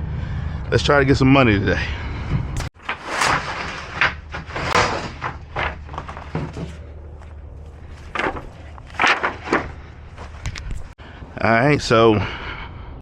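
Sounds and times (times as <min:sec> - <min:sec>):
knocks and scrapes of handling: 0:02.6 - 0:11.0.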